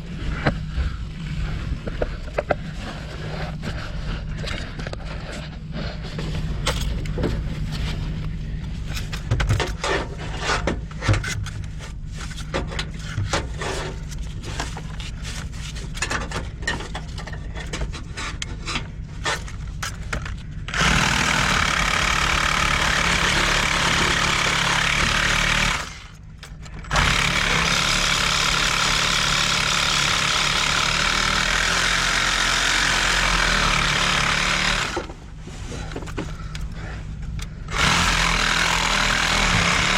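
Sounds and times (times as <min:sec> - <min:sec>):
cable clicking and scraping in pipe: 0:01.8 - 0:27.9
drain snake motor: 0:20.7 - 0:26.2, 0:26.9 - 0:35.1, 0:37.7 - 0:39.9.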